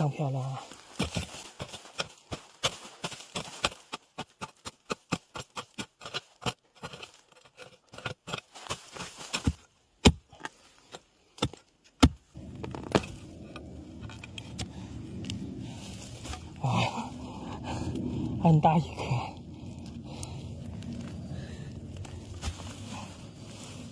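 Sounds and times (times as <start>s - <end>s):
digging tool striking soil: 0.8s - 10.5s, 11.4s - 13.2s
steady low rumble: 12.3s - 23.9s.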